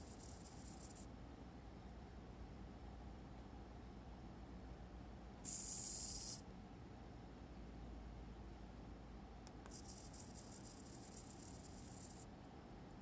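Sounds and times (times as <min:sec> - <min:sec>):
small servo motor whirring: 0:05.5 - 0:06.4.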